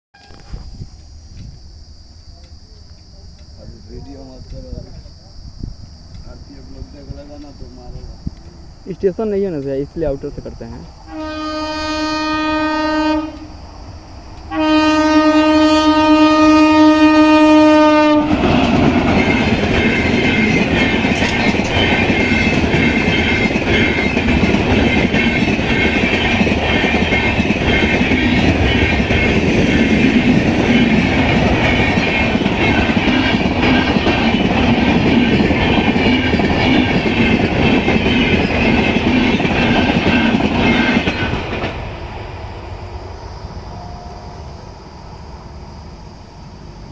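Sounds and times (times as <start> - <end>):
locomotive horn blasts: 0.1 - 0.6, 11.1 - 13.5, 14.5 - 18.4
train passing on rails: 0.2 - 46.9.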